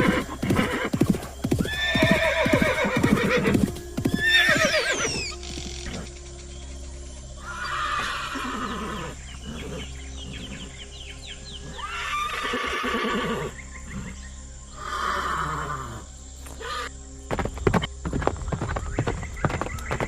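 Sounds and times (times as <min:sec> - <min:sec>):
horse neighing: 0:00.0 - 0:06.1, 0:07.4 - 0:10.7, 0:11.6 - 0:14.2, 0:14.8 - 0:16.0
background music: 0:00.0 - 0:20.0.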